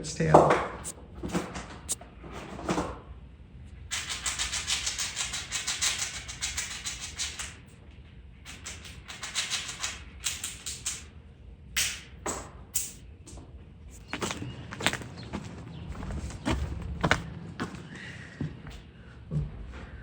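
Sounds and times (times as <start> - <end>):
squirrel gnawing nuts: 3.9 - 7.8, 8.4 - 11.1.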